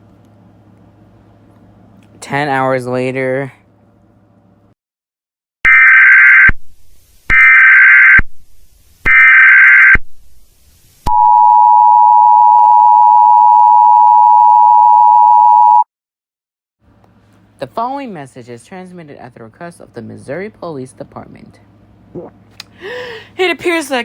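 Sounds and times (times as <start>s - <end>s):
two-tone attention signal: 11.1s - 15.8s.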